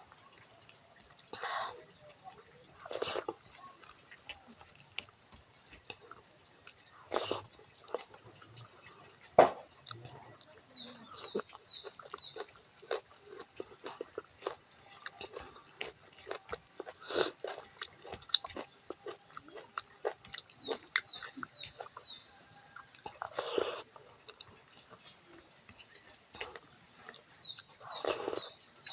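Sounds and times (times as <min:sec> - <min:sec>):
wet chewing and slurping: 0:00.0 - 0:28.9.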